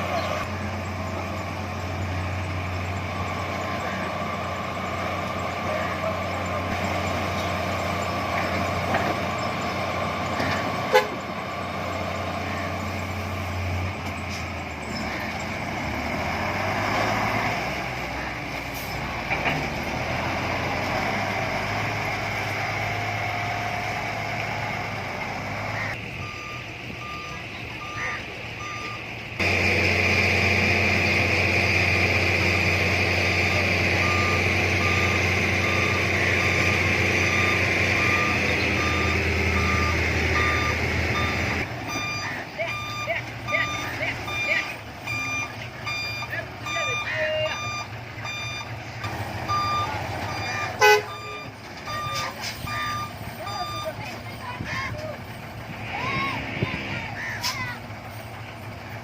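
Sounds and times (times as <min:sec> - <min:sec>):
heavy diesel machinery drone: 0:00.0 - 0:59.0
reversing alarm beeping: 0:25.9 - 0:29.2, 0:32.7 - 0:48.8, 0:49.4 - 0:54.2.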